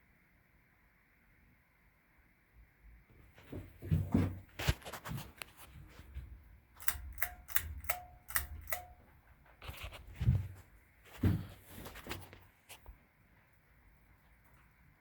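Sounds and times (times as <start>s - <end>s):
sharp irregular clicks: 6.8s - 9.0s.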